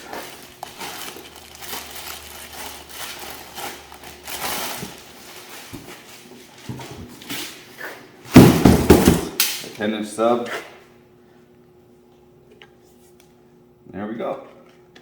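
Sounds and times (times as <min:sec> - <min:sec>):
cardboard box rustling and crinkling: 0:00.2 - 0:06.1.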